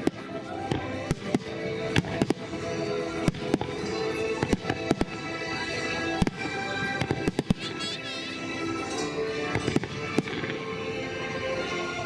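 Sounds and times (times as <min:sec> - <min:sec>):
fireworks bangs: 0:00.0 - 0:05.3, 0:06.1 - 0:08.0, 0:09.4 - 0:10.7
music: 0:00.0 - 0:12.0
whistling fireworks: 0:00.0 - 0:12.0.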